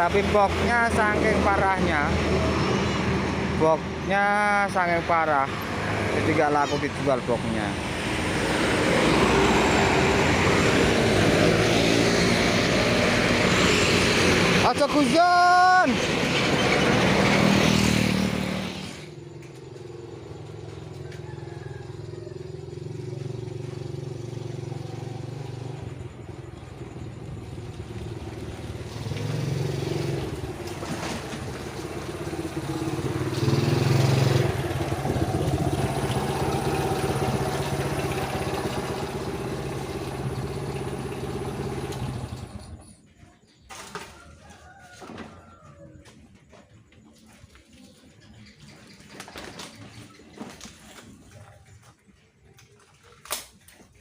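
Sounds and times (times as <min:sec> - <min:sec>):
vehicle engine running: 0:17.6 - 0:42.9.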